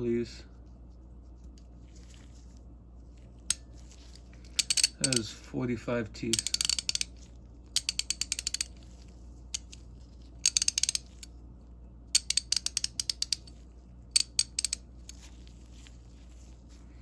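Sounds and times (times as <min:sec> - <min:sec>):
ratchet clicking: 0:04.5 - 0:05.3, 0:06.4 - 0:07.1, 0:07.8 - 0:08.7, 0:09.6 - 0:09.8, 0:10.4 - 0:11.3, 0:12.2 - 0:13.5, 0:14.2 - 0:15.2.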